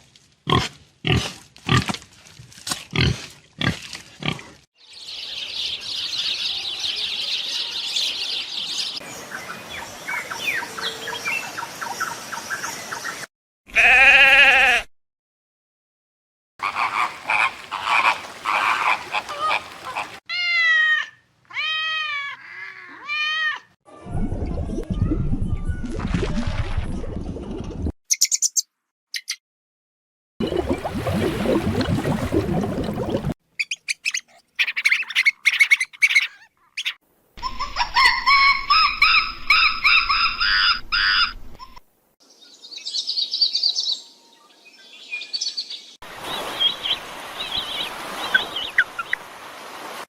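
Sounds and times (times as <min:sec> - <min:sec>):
high-pitched bird chirps: 0:28.1 - 0:29.4, 0:33.6 - 0:41.8
chattering animal noise: 0:33.6 - 0:37.0
bird repeated pitched calls: 0:33.6 - 0:41.3.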